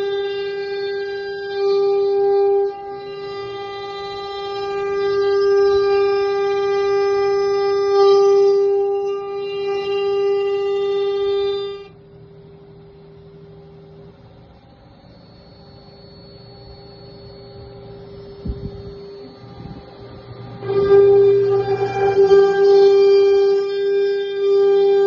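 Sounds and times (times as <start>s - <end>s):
faint high whistle: 0.0s - 12.0s, 12.6s - 25.0s
router spindle whining: 0.0s - 25.0s.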